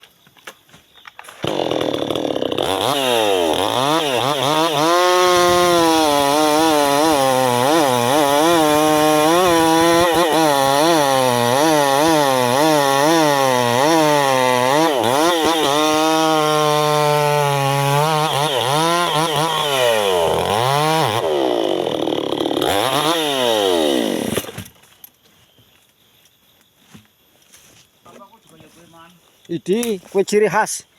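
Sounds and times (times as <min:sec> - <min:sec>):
chainsaw cutting wood: 0:01.2 - 0:24.8.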